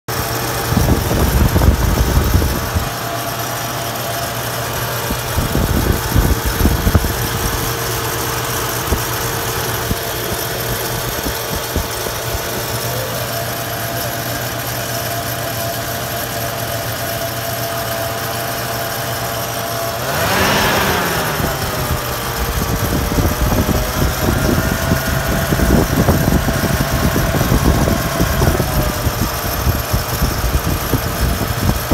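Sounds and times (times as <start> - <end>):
engine rattle: 0.0 - 31.9
engine running with whine: 0.1 - 31.9.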